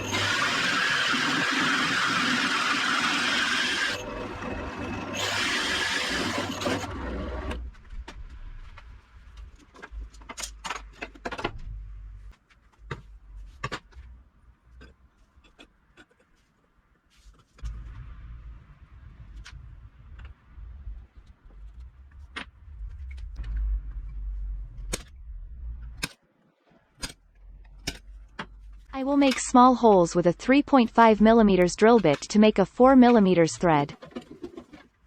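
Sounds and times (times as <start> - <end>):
power tool running loudly: 0.0 - 7.5.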